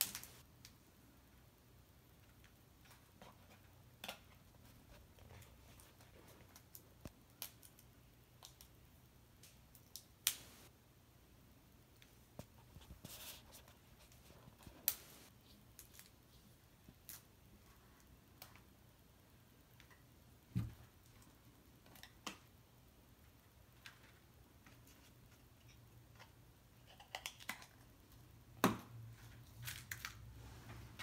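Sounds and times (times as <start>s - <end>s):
sharp clicks and snaps: 9.4s - 10.7s.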